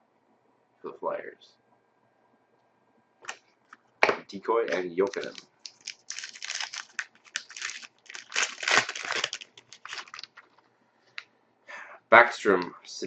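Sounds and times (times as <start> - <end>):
plastic wrapper crinkling: 4.7 - 10.7.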